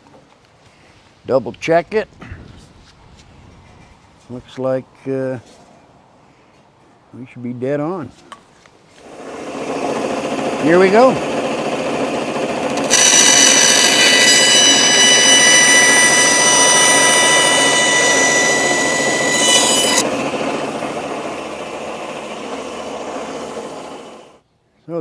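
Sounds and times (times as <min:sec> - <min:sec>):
bandsaw cutting wood: 0:09.0 - 0:24.4
bandsaw running idle: 0:09.0 - 0:24.4.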